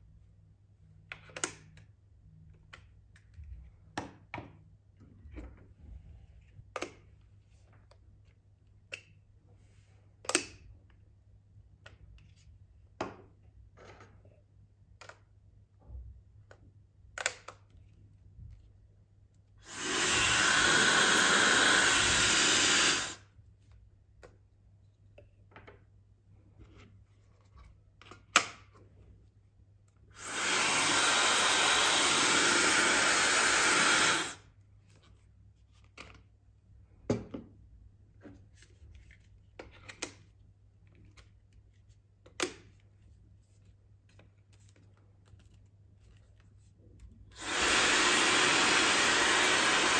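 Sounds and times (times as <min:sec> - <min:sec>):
hair dryer blowing: 0:19.6 - 0:23.2, 0:30.2 - 0:34.4, 0:47.4 - 0:49.9.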